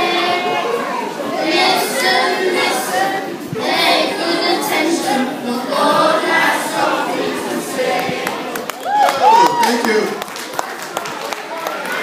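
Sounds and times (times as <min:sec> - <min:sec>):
children's choir singing: 0:00.0 - 0:08.7.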